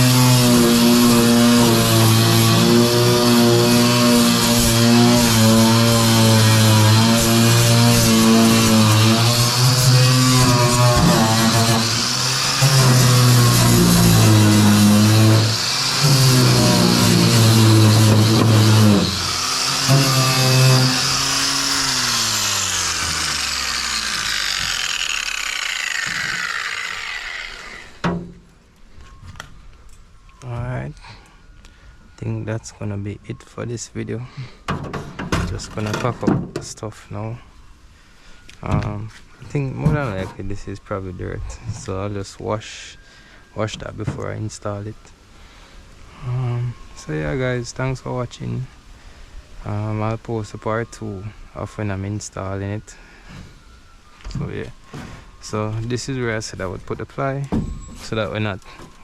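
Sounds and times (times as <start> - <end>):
power tool motor spinning down: 7.5 - 28.0.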